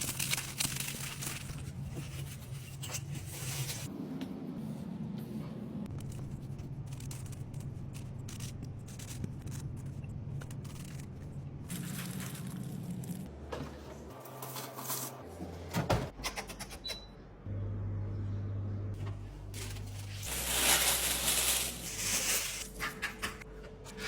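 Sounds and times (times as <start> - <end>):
low steady hum: 17.4 - 24.0.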